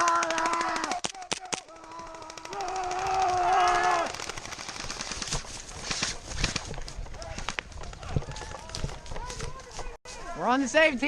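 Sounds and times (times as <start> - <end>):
airsoft guns firing: 0.0 - 8.5
person yelling: 1.7 - 4.1.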